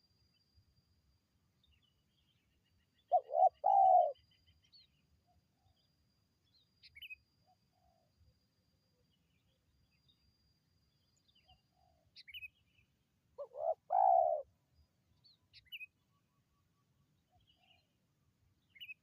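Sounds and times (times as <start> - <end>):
small birds chirping: 1.6 - 5.0, 11.1 - 16.2
dove cooing: 3.1 - 4.2, 13.4 - 14.5.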